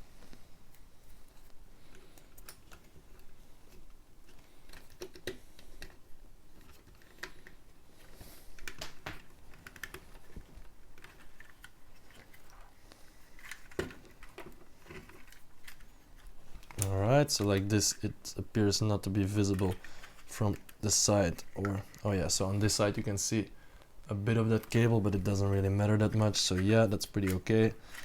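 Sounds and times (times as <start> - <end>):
plastic pieces clicking and tapping: 8.6 - 12.5.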